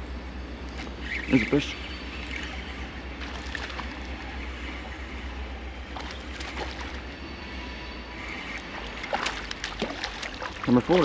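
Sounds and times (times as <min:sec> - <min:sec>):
sharp splashing: 0:03.2 - 0:04.1, 0:06.0 - 0:07.0, 0:08.7 - 0:11.0
river current rushing: 0:08.5 - 0:11.0.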